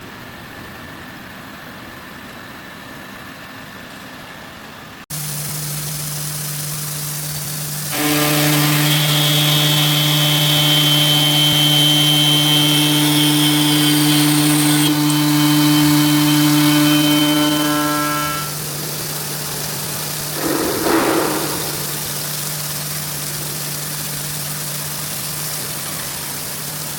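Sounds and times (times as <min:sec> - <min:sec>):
machine hum with high whine: 0:05.2 - 0:25.8.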